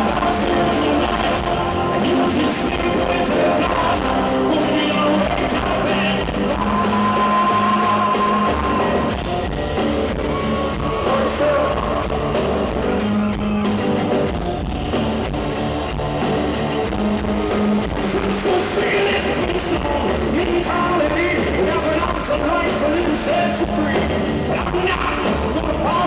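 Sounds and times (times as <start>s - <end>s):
person singing long notes: 0.0s - 9.4s
acoustic guitars: 0.0s - 26.0s.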